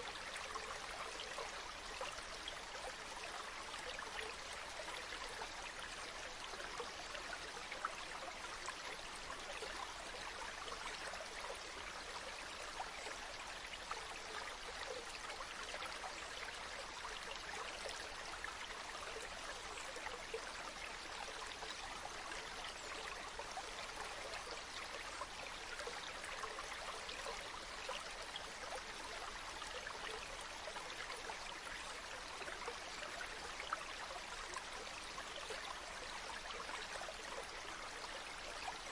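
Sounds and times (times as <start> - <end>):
stream flowing over stones: 0.0 - 38.9.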